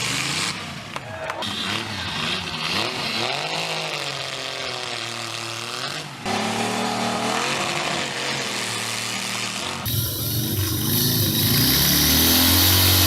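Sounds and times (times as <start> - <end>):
chainsaw cutting log: 2.8 - 13.0
louder engine running steadily: 4.2 - 13.0.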